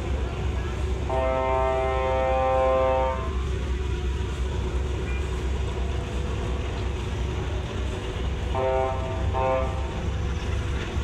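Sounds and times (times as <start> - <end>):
horn blasts: 1.1 - 3.4, 8.5 - 9.9.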